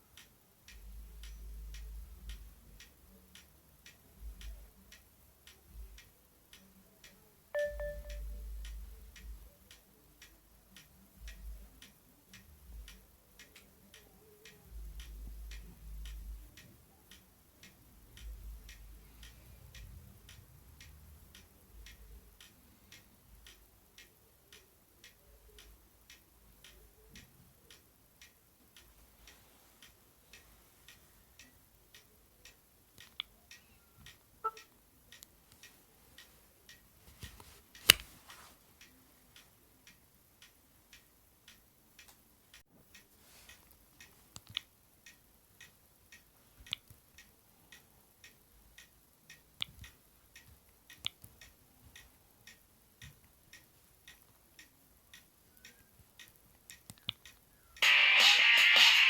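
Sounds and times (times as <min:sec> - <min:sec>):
clock ticking: 0:00.0 - 0:59.0
brief beep: 0:07.6 - 0:08.2.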